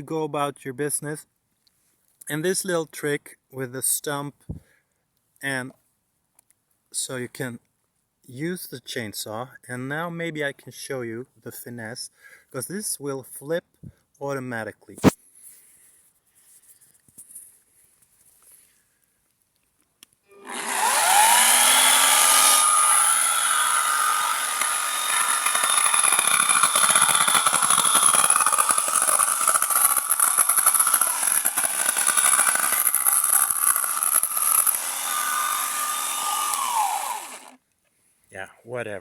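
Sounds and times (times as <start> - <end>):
electric chainsaw cutting wood: 20.3 - 37.6.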